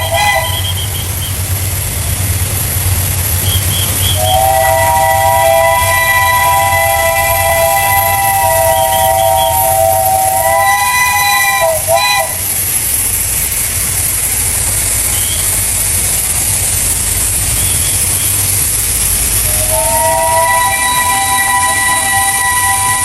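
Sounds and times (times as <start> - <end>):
steam locomotive whistle: 0.0 - 1.5, 3.4 - 12.6, 15.0 - 15.6, 17.5 - 23.0
steam hissing: 0.0 - 23.0.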